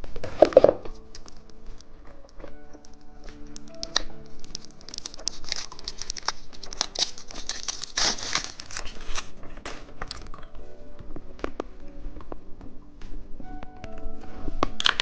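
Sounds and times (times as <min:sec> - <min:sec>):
plastic packaging crinkling: 0:03.6 - 0:10.4, 0:14.6 - 0:15.0.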